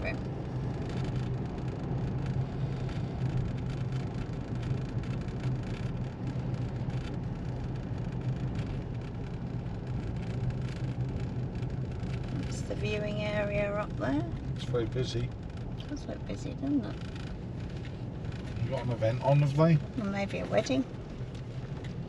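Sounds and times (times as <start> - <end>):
car interior road and engine hum: 0.0 - 22.0.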